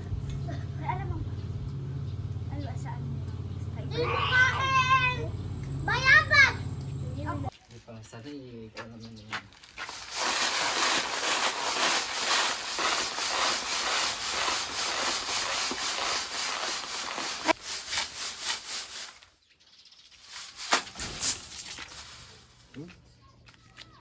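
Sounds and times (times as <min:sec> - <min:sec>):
rasping strokes on wood: 0:10.6 - 0:17.6.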